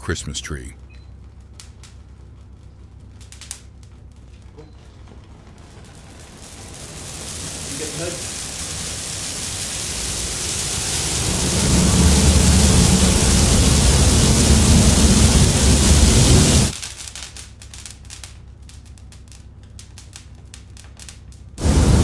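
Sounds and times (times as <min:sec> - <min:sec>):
fire crackling: 0:01.4 - 0:04.2, 0:05.4 - 0:22.0
roar of flames: 0:05.6 - 0:16.8, 0:21.6 - 0:22.0.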